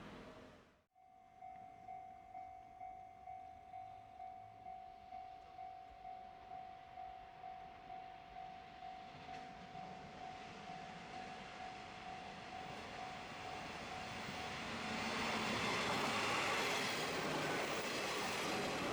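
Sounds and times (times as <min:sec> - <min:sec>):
level crossing warning bell: 0:01.0 - 0:15.3.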